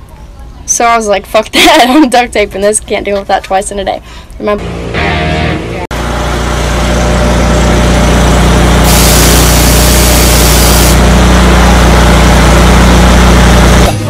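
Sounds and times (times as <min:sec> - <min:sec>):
engine running loudly: 0:04.6 - 0:14.0
hiss: 0:08.8 - 0:11.0.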